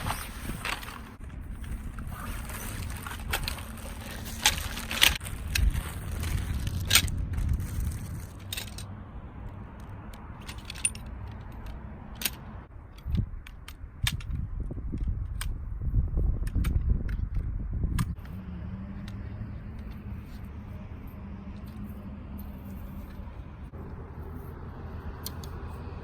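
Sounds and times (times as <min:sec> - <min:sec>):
gusty wind on microphone: 0:00.0 - 0:08.7, 0:12.7 - 0:18.2
sharp clicks and rattles: 0:00.0 - 0:15.6.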